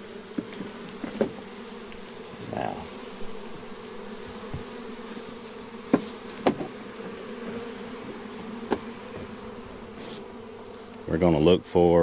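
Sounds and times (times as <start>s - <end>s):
bee swarm buzzing: 0.0s - 12.0s
sharp knocks: 5.9s - 6.8s.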